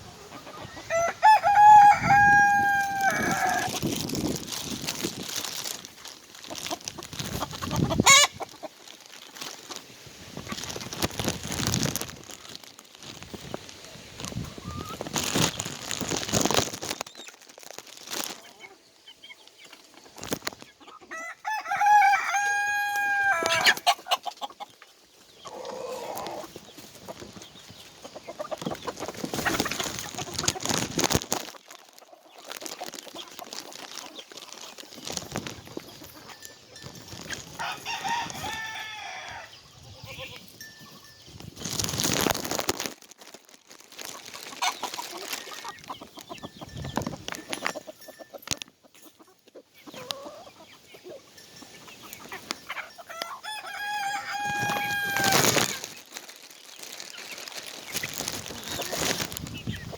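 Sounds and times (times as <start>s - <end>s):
chickens clucking: 0.0s - 42.9s, 43.9s - 59.9s
rooster crowing: 0.8s - 3.7s, 21.1s - 23.7s, 37.6s - 39.5s, 53.1s - 55.6s
rustling noise: 1.2s - 18.5s, 19.8s - 20.8s, 26.0s - 38.9s, 40.0s - 48.7s, 54.0s - 59.9s.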